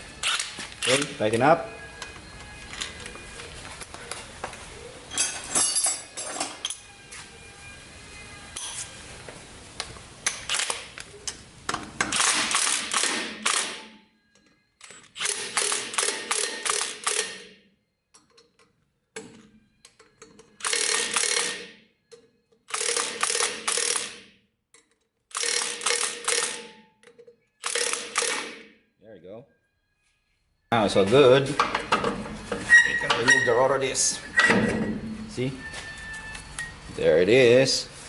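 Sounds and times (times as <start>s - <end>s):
ratchet wrench clicking: 15.2s - 17.4s, 20.6s - 21.6s, 22.7s - 24.2s, 25.3s - 26.7s, 27.6s - 28.4s.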